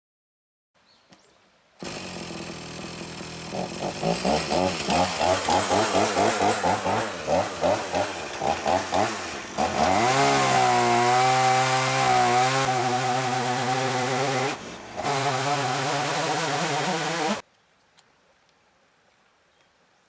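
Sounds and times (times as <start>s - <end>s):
chainsaw cutting log: 1.8s - 17.4s.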